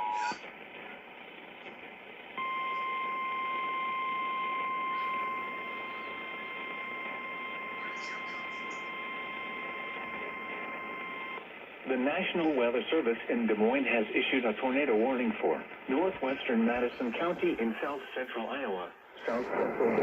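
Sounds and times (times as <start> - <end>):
radio hiss: 0.0 - 20.0
steady high-pitched beep: 2.4 - 11.4.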